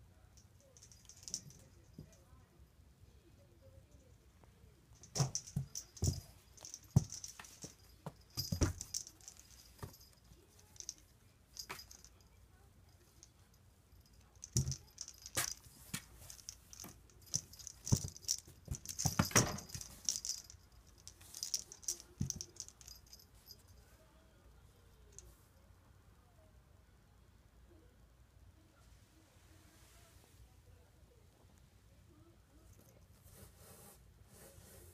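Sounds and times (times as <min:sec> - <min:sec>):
cat toy rattling and jingling: 0:00.7 - 0:02.1, 0:05.0 - 0:12.3, 0:13.0 - 0:23.7.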